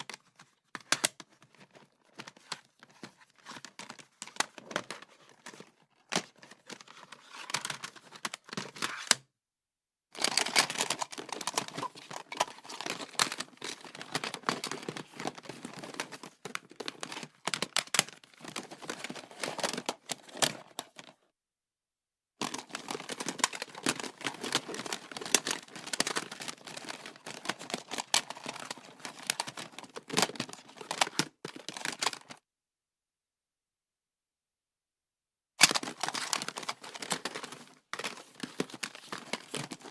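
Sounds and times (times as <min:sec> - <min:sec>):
stationery rattling in a drawer: 0:10.2 - 0:21.1, 0:22.4 - 0:32.2, 0:35.6 - 0:39.9.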